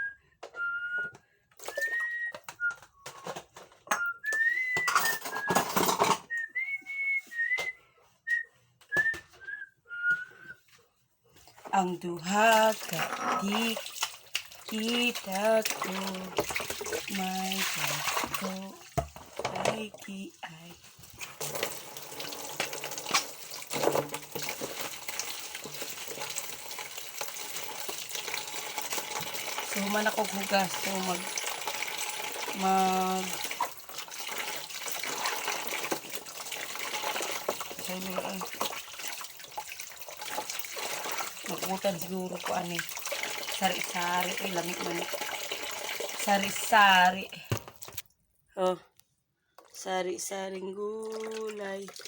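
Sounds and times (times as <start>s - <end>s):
person whistling a tune: 0.0s - 10.7s
dishes clinking and clattering: 4.7s - 6.4s, 21.3s - 32.6s
dishes clinking: 4.8s - 6.3s.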